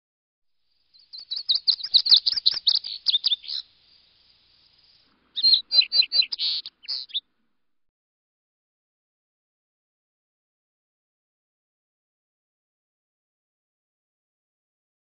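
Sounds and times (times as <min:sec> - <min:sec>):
songbird chirping: 0:00.7 - 0:07.5.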